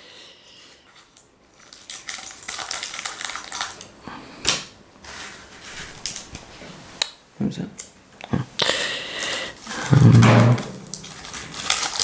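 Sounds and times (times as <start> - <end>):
plastic wrapper rustling: 1.0 - 4.0, 4.6 - 6.7, 9.1 - 12.0
scissors cutting plastic wrapper: 1.1 - 4.7, 9.2 - 12.0.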